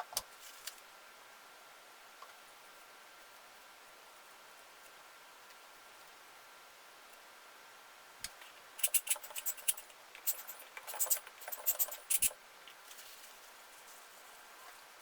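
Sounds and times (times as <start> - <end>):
sharp clicks and scrapes: 8.2 - 13.1.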